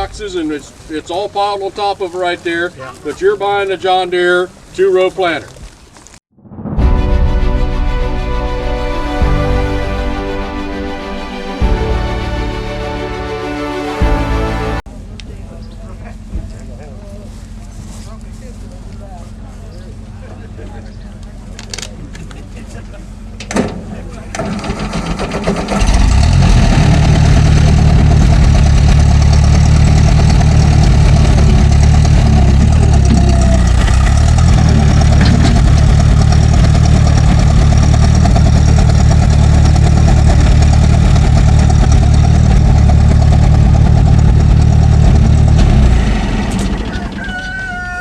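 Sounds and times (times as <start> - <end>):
tractor engine running: 24.4 - 48.0.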